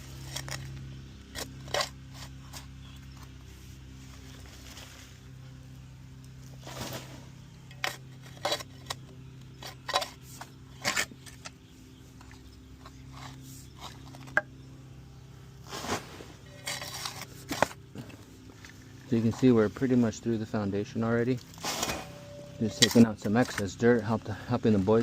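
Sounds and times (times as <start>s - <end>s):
shovel scraping hard dirt: 0.0s - 3.1s, 6.5s - 11.6s, 15.6s - 18.3s, 21.5s - 23.8s
steady low hum: 0.0s - 25.0s.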